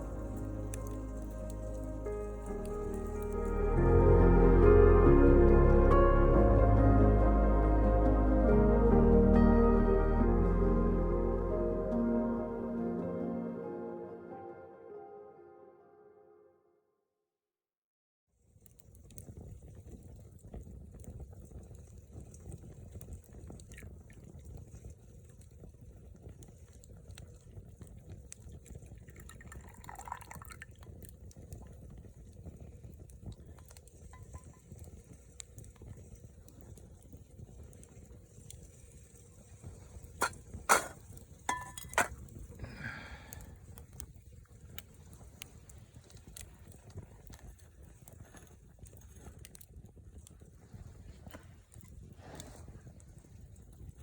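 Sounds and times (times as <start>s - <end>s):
liquid bubbling or pouring: 0.0s - 3.8s, 18.9s - 54.0s
low rumble: 0.0s - 13.5s.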